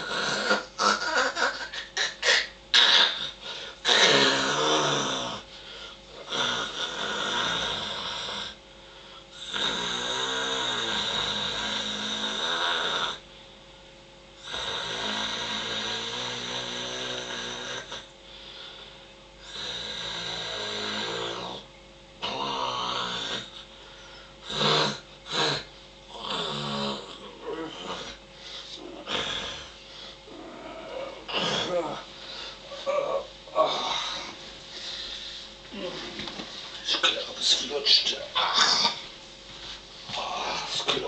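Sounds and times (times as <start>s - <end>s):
person snoring: 0.0s - 8.6s, 9.3s - 13.2s, 14.4s - 35.9s, 37.6s - 39.1s, 40.1s - 41.0s
short snorts: 24.4s - 27.1s.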